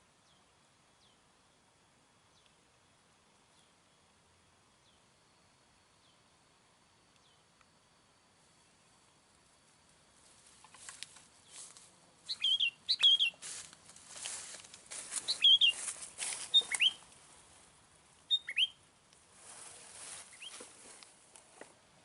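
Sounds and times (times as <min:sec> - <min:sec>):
bird calling bubbly whistles: 0:12.3 - 0:13.3, 0:16.5 - 0:17.0, 0:18.3 - 0:18.8.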